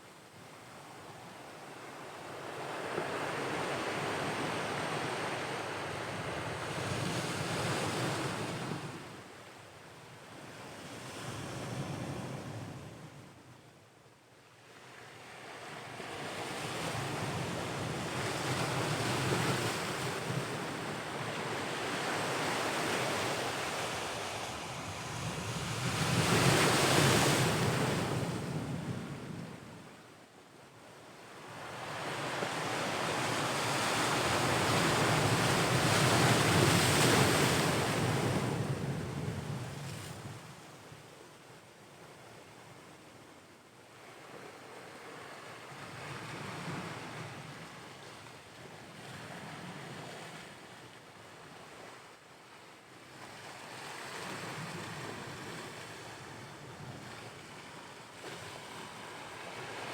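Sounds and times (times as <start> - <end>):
ocean waves breaking: 20.7 - 28.5.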